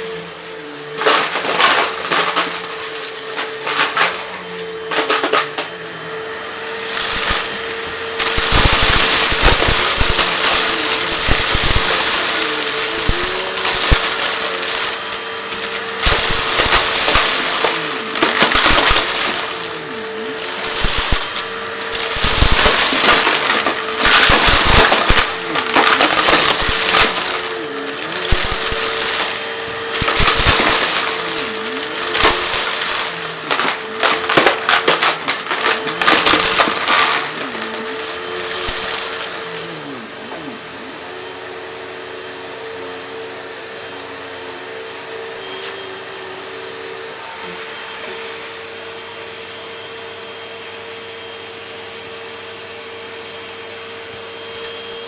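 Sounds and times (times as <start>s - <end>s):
vacuum cleaner motor whine: 0.0s - 55.0s
grit crackling and rattling: 1.0s - 5.5s, 6.5s - 40.1s.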